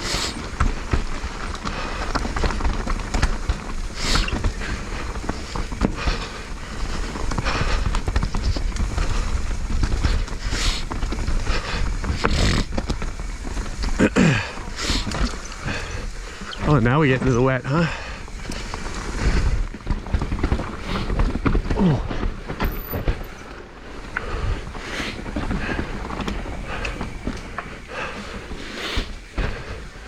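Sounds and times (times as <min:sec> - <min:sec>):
bike knocking and rattling: 0:00.0 - 0:30.0
bike tyres over dirt: 0:00.0 - 0:30.0
low wind rumble on microphone: 0:00.0 - 0:30.0.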